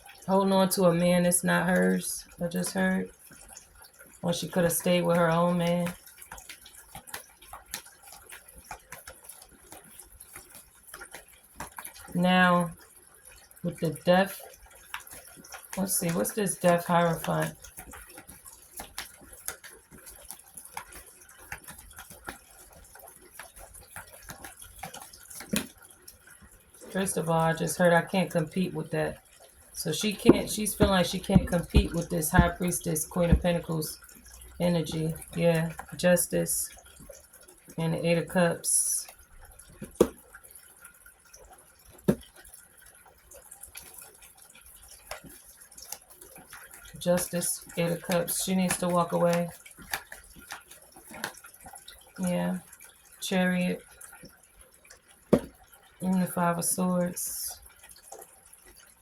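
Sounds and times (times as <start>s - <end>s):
cards clicking and tapping: 30.2s - 33.6s, 39.8s - 40.2s, 48.0s - 49.1s, 55.3s - 55.5s.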